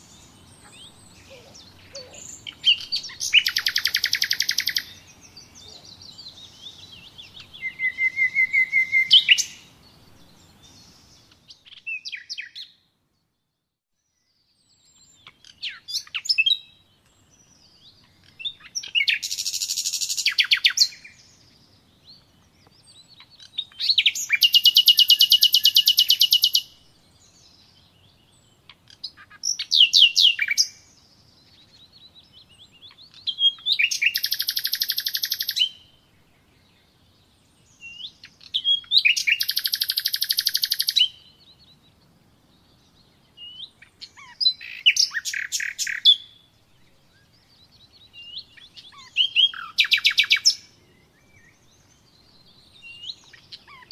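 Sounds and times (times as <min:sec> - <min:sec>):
songbird trilling: 0:00.0 - 0:12.8, 0:17.4 - 0:21.2, 0:22.6 - 0:36.0, 0:37.7 - 0:41.8, 0:43.3 - 0:46.4, 0:47.2 - 0:53.9.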